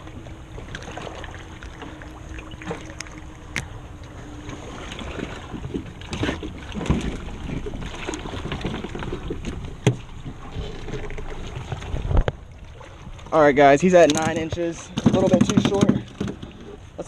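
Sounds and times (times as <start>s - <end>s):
knocks clicks and rustling: 13.9s - 16.7s.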